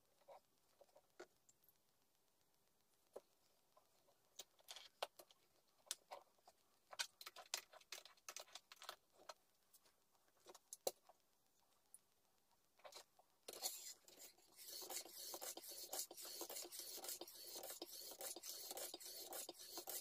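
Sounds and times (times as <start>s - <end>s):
knife scraping on whetstone: 13.5s - 20.0s.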